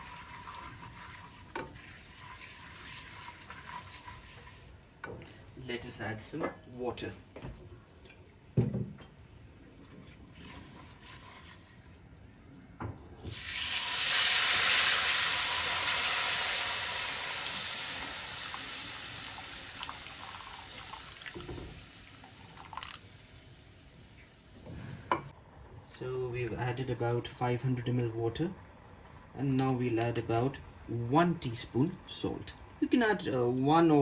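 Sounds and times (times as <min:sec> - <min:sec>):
water sizzling in hot oil: 0:00.0 - 0:05.0, 0:10.3 - 0:12.0, 0:13.2 - 0:24.7.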